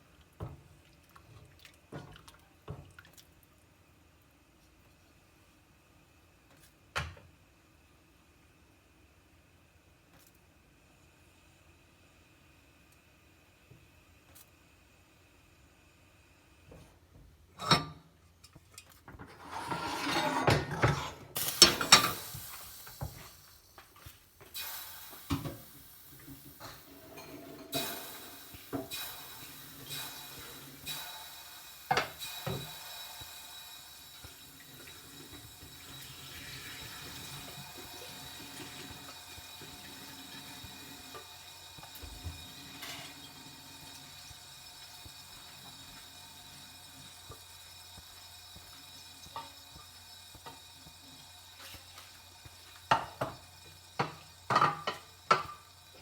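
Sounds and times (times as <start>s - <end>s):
pots and dishes clattering: 17.6s - 18.1s, 19.1s - 22.4s, 26.2s - 29.2s, 52.8s - 55.7s.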